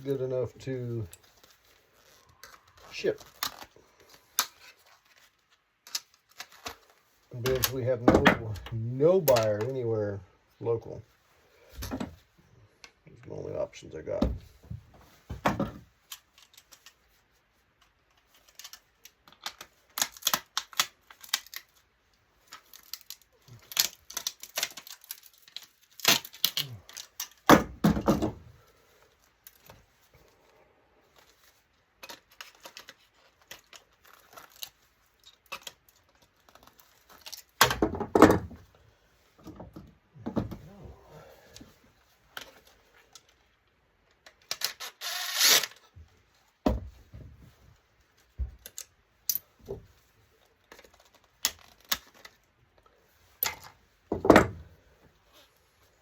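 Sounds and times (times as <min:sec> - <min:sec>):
metal parts clicking and clattering: 0:17.8 - 0:27.5.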